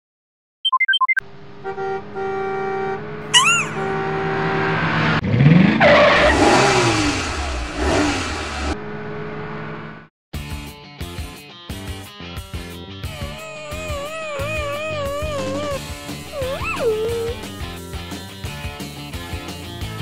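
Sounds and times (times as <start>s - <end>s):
vehicle engine revving: 2.8s - 10.0s, 13.1s - 17.8s
rising chirp: 3.3s - 3.9s
short cartoon blips: 3.3s - 3.9s.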